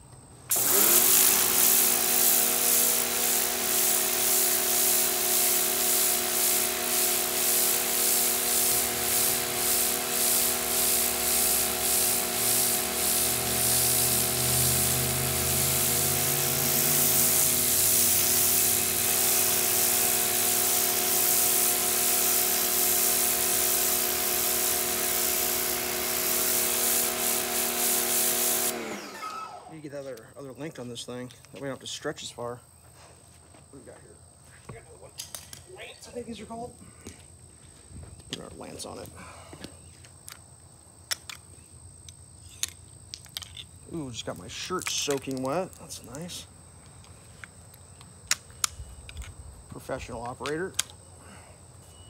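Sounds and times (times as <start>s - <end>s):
water spray hissing on concrete: 0.5s - 29.0s, 44.0s - 46.4s
pressure washer motor hum: 0.5s - 29.8s.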